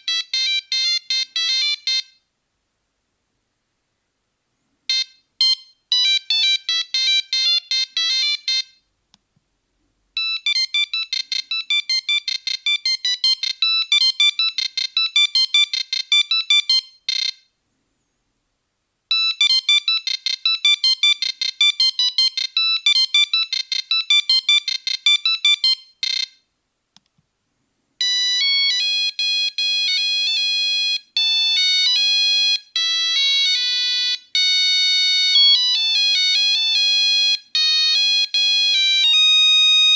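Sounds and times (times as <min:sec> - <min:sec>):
monophonic ringtone melodies: 0:04.9 - 0:08.7, 0:10.2 - 0:17.4, 0:19.1 - 0:26.3, 0:28.0 - 0:39.9.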